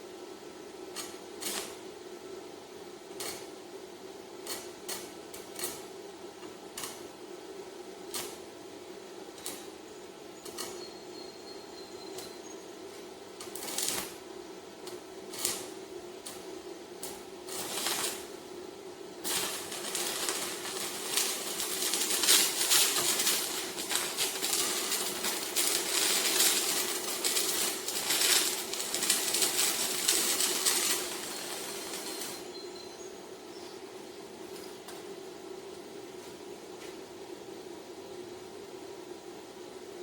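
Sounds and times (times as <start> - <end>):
steady low hum: 0.0 - 40.0
welding arc crackling: 0.8 - 11.0, 11.7 - 32.6.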